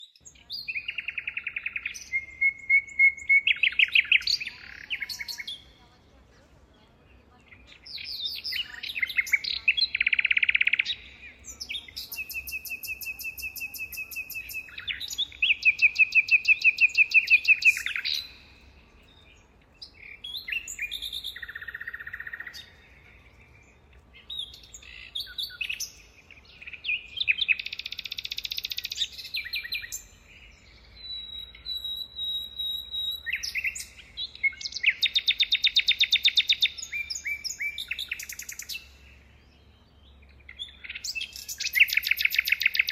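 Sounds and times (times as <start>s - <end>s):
bird trilling and chirping: 0.2s - 5.7s, 7.5s - 39.2s, 40.2s - 42.9s.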